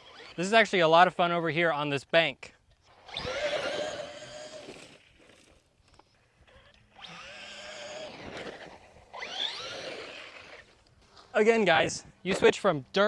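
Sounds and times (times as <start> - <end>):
toy truck electric motor whining: 0.0 - 0.5, 2.8 - 10.9.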